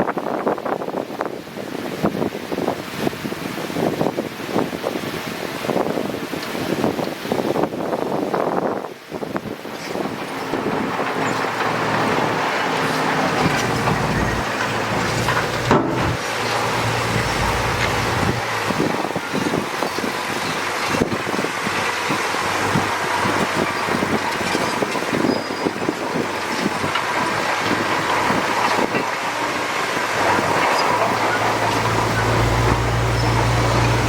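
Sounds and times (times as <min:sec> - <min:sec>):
machinery rattling and clattering: 0:09.9 - 0:34.0
low engine drone: 0:10.2 - 0:20.7, 0:29.2 - 0:34.0.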